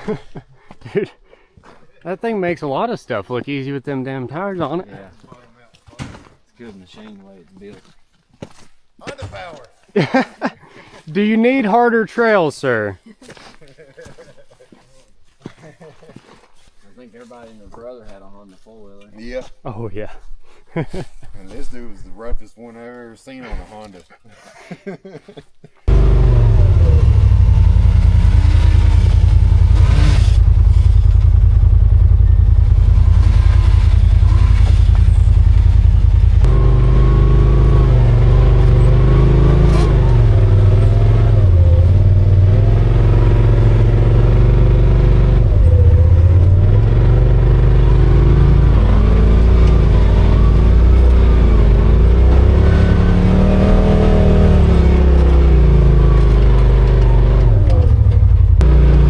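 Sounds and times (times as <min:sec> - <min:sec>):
off-road vehicle engine revving: 0:25.9 - 0:59.0.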